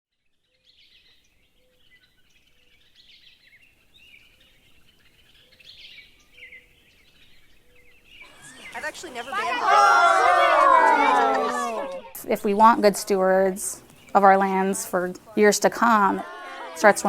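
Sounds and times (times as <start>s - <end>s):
birds chirping and trilling: 0.6s - 9.3s, 12.0s - 15.1s.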